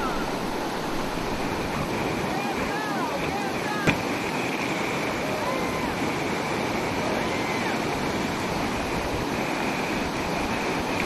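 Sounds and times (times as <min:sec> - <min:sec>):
whitewater rapids rushing: 0:00.0 - 0:11.0.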